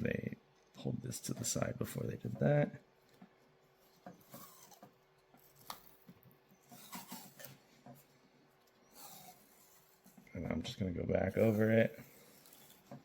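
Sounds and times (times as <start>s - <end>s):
tape rustling: 3.0s - 10.3s, 11.3s - 13.0s.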